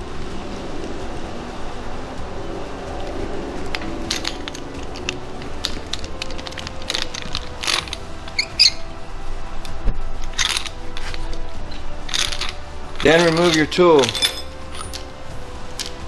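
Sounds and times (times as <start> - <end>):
ringing metal clink: 13.6 - 15.1.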